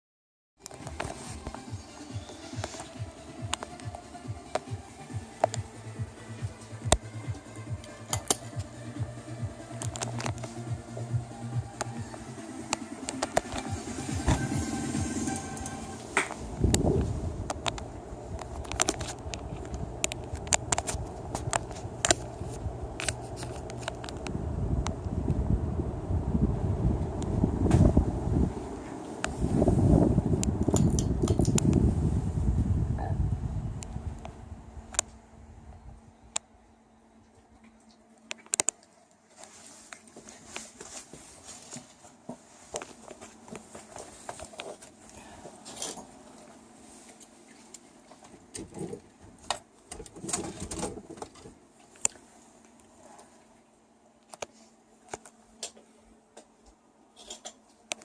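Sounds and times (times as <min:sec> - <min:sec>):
rustling handling noise: 0:00.6 - 0:08.8, 0:11.8 - 0:24.3, 0:38.2 - 0:53.5
ceiling fan motor humming: 0:00.6 - 0:58.0
sharp clicks and crackles: 0:07.8 - 0:08.8, 0:09.8 - 0:10.7, 0:15.6 - 0:25.1, 0:37.6 - 0:38.9.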